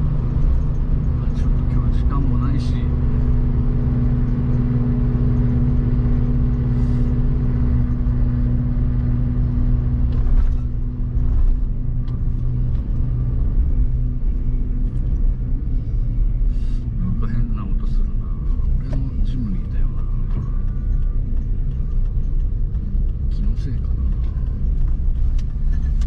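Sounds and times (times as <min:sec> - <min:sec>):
loud droning hum: 0:00.0 - 0:26.0
road and engine noise: 0:00.0 - 0:26.0.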